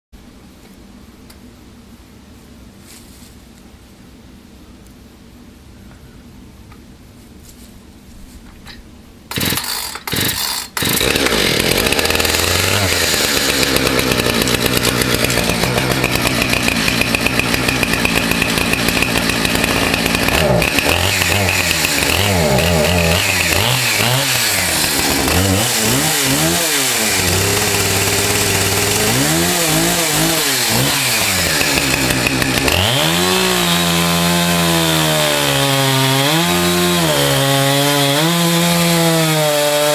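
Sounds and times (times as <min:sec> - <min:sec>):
chainsaw starting and revving: 0:09.3 - 0:39.9.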